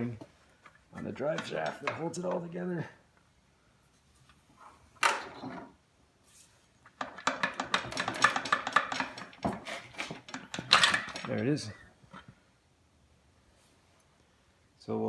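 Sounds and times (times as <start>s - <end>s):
rapid metal clinks and knocks: 1.0s - 2.4s, 7.0s - 11.6s
metal clunks and rattling: 7.0s - 11.6s.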